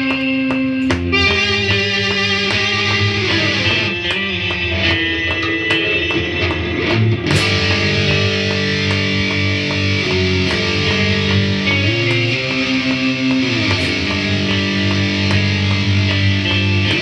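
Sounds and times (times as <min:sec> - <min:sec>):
distorted electric guitar chords: 0:00.0 - 0:17.0
ticking beat: 0:00.0 - 0:17.0
cymbal crash: 0:07.3 - 0:17.0.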